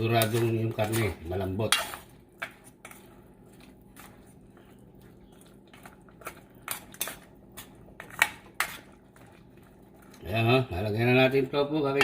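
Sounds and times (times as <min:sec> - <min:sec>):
utensils clinking against cookware: 0:00.0 - 0:03.1.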